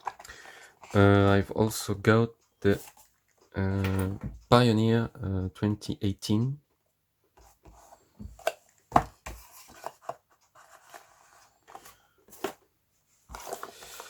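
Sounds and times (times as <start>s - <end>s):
packaging rustling and scraping: 7.7s - 14.0s.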